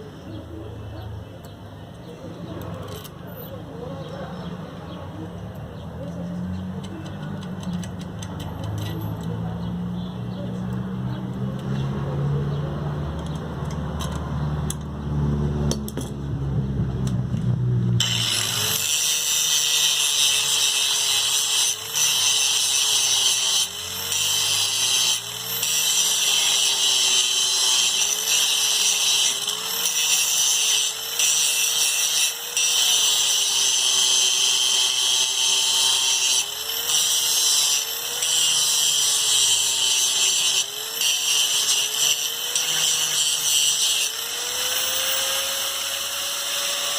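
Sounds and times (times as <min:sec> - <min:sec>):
power tool motor whine: 0:18.0 - 0:46.9.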